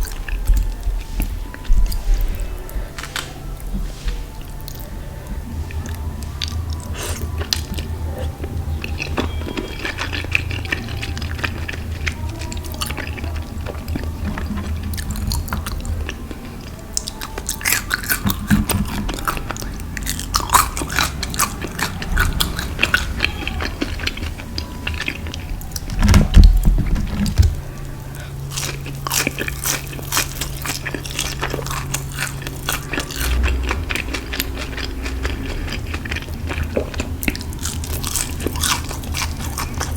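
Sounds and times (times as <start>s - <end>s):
crunchy chewing of fried food: 0.0s - 39.9s.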